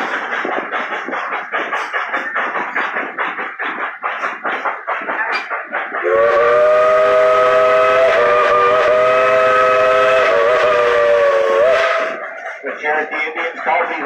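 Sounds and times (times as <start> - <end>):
rhythmic pulsing: 0.0 - 14.0
steam locomotive whistle: 6.0 - 12.5.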